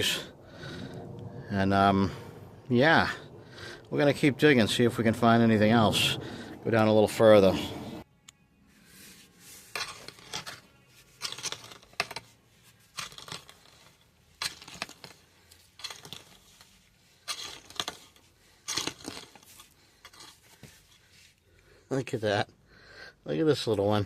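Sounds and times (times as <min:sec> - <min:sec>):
digging scrapes in soil: 0:08.7 - 0:21.4.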